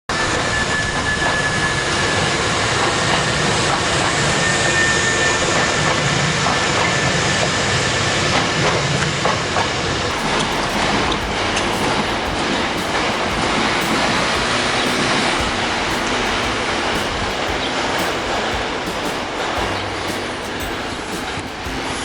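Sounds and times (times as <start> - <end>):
high whine: 10.1 - 22.0
wheels clicking: 10.1 - 22.0.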